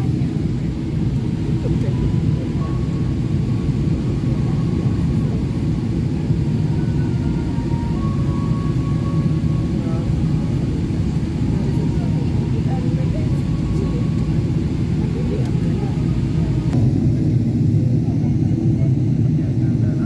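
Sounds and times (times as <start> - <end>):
jet engines rumbling: 0.0 - 20.0
airflow around fuselage: 14.1 - 20.0.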